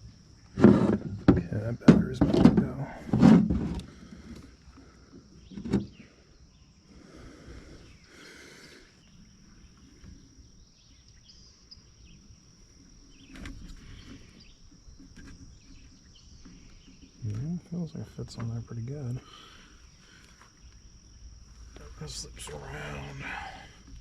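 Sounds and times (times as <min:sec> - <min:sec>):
high insect trill: 0:00.0 - 0:24.0
small knocks: 0:00.6 - 0:03.9.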